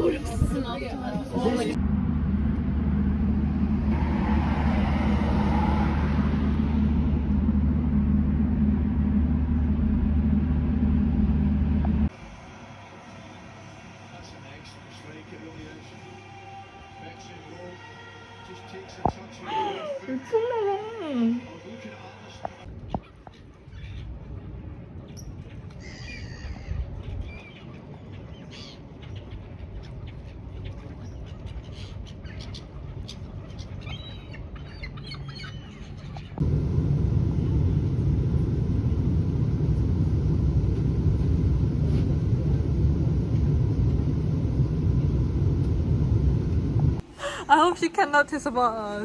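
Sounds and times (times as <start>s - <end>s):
vehicle engine rumble: 0.0s - 12.2s, 36.1s - 47.1s
birds chirping and squawking: 22.8s - 36.4s.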